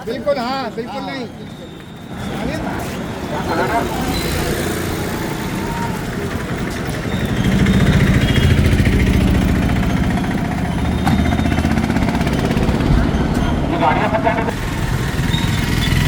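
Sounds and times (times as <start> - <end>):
vehicle engine running: 4.2 - 16.0.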